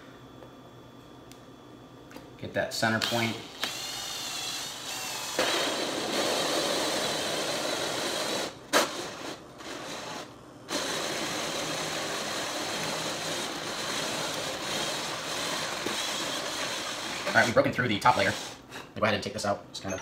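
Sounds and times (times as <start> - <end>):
power drill boring through cardboard: 3.6 - 18.6.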